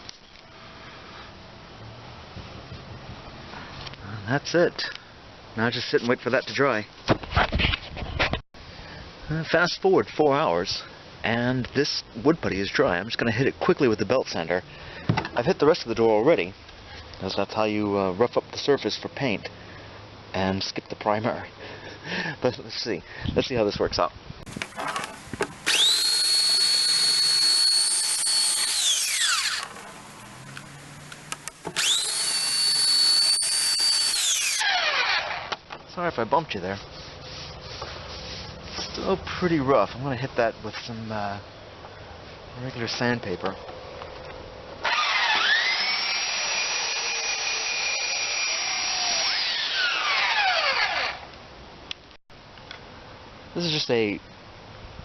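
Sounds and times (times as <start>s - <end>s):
belt sander whining: 24.5s - 35.6s, 44.8s - 51.3s.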